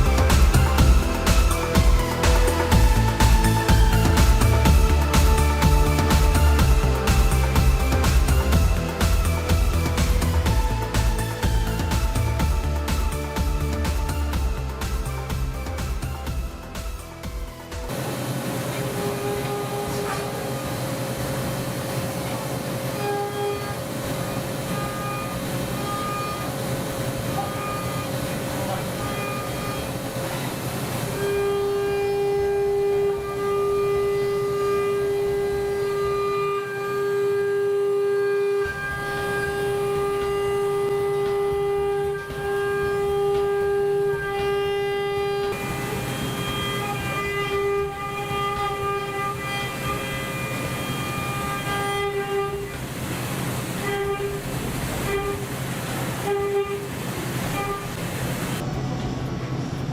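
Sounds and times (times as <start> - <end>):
milling machine cutting metal: 17.7 - 58.6.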